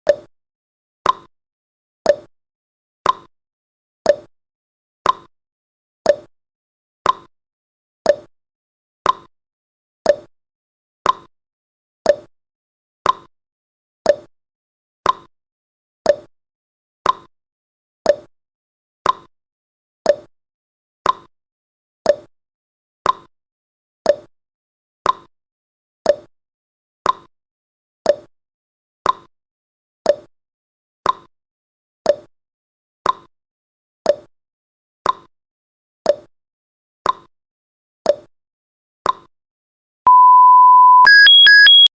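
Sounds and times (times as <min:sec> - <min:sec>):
timer ticking: 0:40.1 - 0:41.9.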